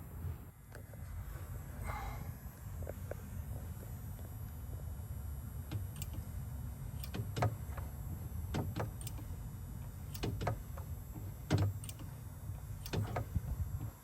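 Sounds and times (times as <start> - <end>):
low steady hum: 0.0 - 14.0
short clicks and knocks: 10.1 - 12.2, 12.8 - 13.4.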